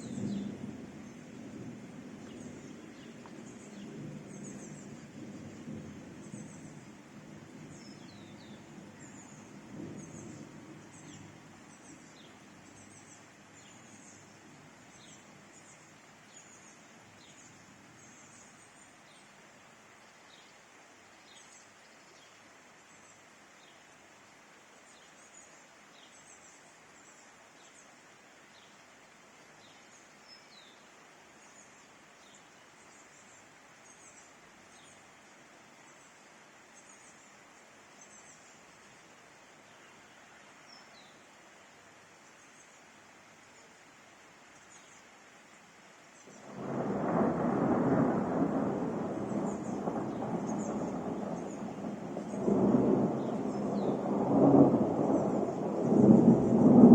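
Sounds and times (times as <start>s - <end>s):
rain shower hiss: 0.0s - 56.9s
small birds chirping: 2.2s - 23.9s, 46.0s - 56.6s.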